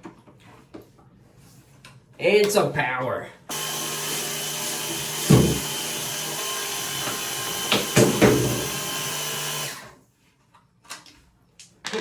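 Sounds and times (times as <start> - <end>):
water spraying into bathtub: 3.5 - 9.7
pump motor humming: 3.5 - 10.0.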